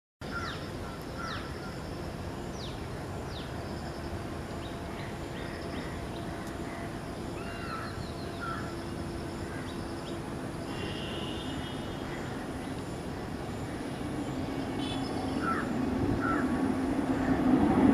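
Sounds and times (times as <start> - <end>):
steady low hum: 0.6 - 17.9
crows cawing: 7.4 - 8.7, 15.4 - 16.6.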